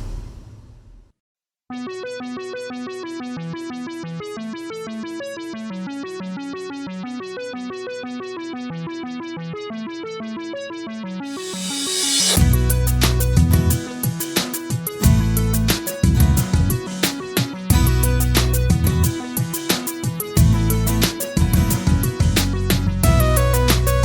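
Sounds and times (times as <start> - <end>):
background music: 10.7 - 24.0
repeating electronic keyboard notes: 12.4 - 24.0.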